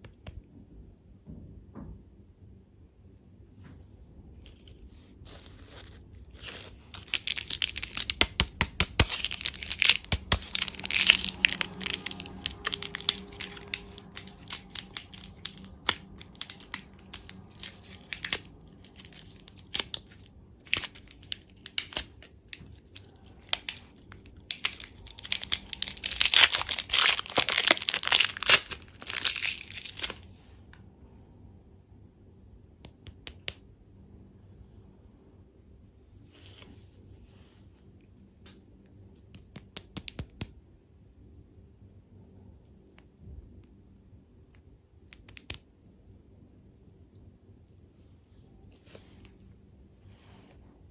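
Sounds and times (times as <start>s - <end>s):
candy packaging crinkling and tearing: 4.4s - 30.3s, 45.1s - 45.6s.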